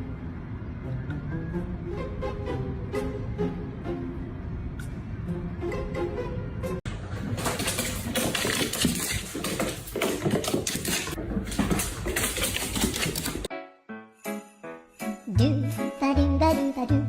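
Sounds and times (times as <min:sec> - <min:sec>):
music: 0:00.0 - 0:06.9, 0:13.5 - 0:17.0.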